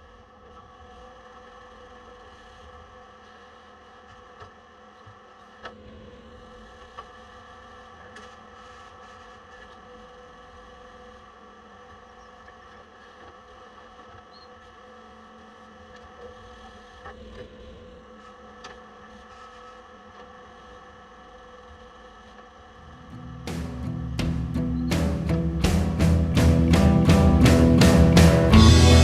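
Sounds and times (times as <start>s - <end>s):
diesel engine droning: 23.2s - 29.0s.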